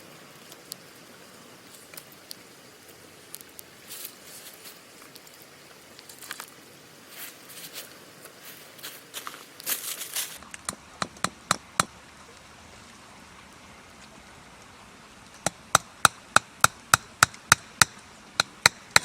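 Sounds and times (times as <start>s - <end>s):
tool striking wood: 15.4s - 19.0s.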